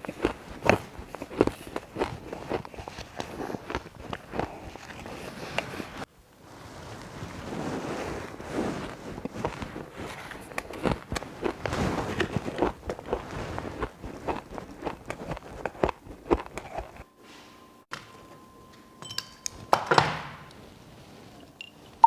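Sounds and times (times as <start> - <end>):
chewing and crunching ice: 0.0 - 5.8, 9.2 - 17.0.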